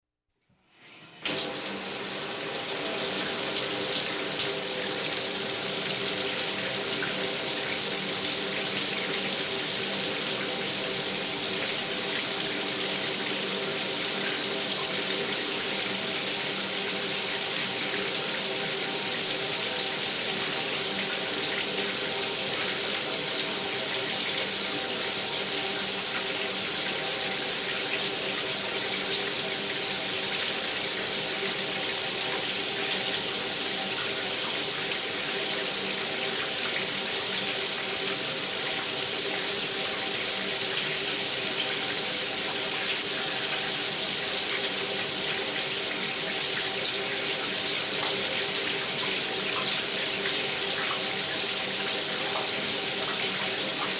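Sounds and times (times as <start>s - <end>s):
shower water spraying: 1.3s - 18.2s.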